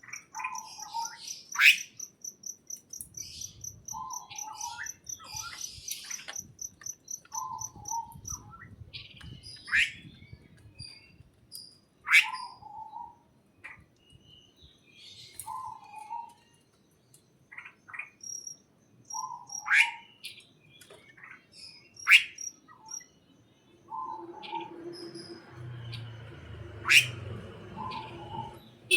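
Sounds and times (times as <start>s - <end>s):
upward-sweeping bird calls: 0.0s - 2.2s, 3.2s - 6.3s, 7.0s - 8.8s, 22.0s - 23.1s, 23.8s - 26.1s, 26.7s - 28.9s
birds chirping and calling: 0.0s - 28.9s.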